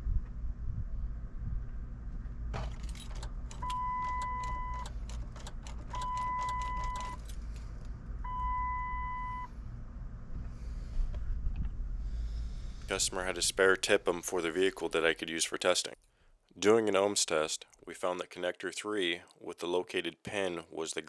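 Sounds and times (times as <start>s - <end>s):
keys jangling in ignition: 2.6s - 7.7s
vehicle warning chime beeps: 2.9s - 4.9s, 5.9s - 7.3s, 8.2s - 9.5s.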